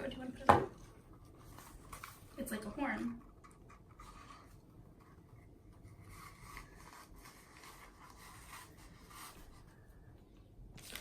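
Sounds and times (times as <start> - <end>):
packaging rubbing and scratching: 1.3 - 9.7.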